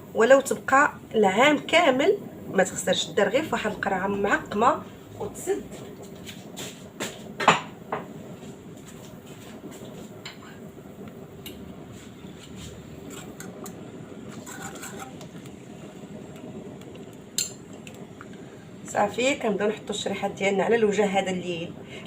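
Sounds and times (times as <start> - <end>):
pot and utensils clinking: 13.0 - 15.4, 17.4 - 17.8.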